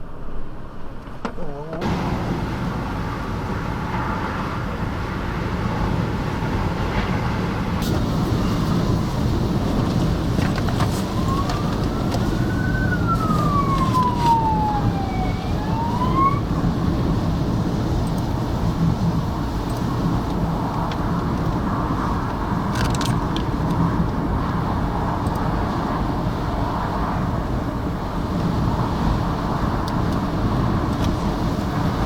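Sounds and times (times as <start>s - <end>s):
road traffic: 0.0s - 32.0s
strong wind rumble: 0.0s - 32.0s
emergency siren wailing: 8.4s - 17.2s.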